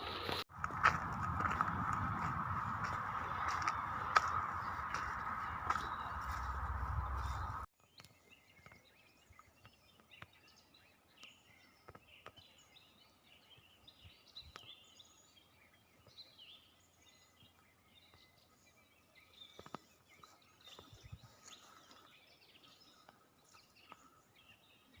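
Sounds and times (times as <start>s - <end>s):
songbirds chirping and singing: 0.1s - 25.0s.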